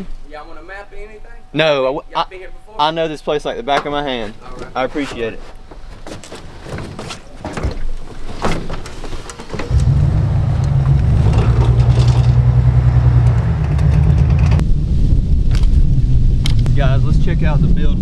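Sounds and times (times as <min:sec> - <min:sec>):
knocks and clatter: 0:03.7 - 0:14.6
engine running: 0:09.3 - 0:14.7.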